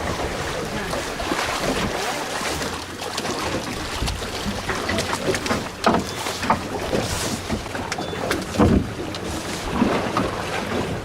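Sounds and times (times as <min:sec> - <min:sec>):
sea noise around a boat: 0:00.0 - 0:11.0.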